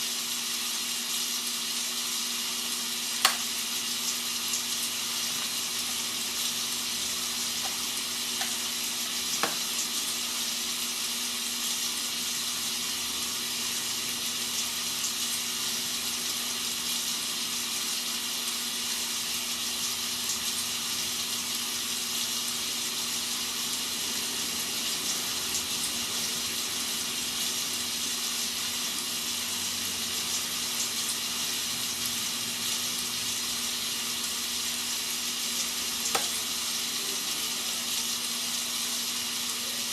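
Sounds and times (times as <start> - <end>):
rain hissing: 0.0 - 39.9.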